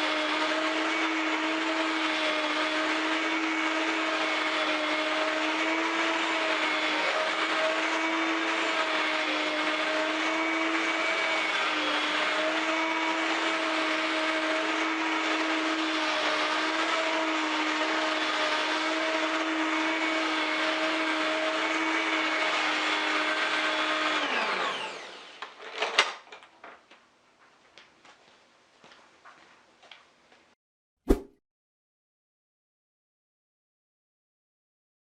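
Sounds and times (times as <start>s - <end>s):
vacuum cleaner motor whining: 0.0s - 26.2s.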